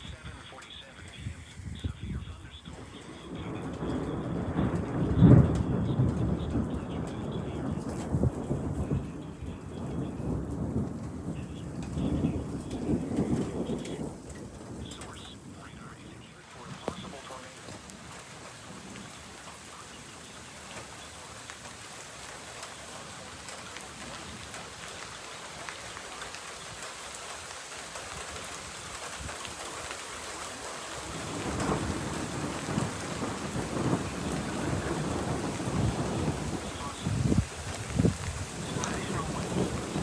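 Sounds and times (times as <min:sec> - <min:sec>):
raindrop clicks: 0:00.0 - 0:40.0
steady rain falling: 0:00.0 - 0:40.0
low thunder rumble: 0:01.2 - 0:40.0.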